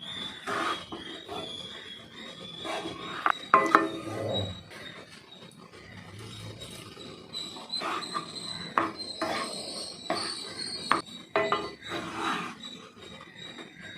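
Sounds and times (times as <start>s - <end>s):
metal spatula scraping cookware: 2.8s - 4.2s, 7.9s - 12.6s.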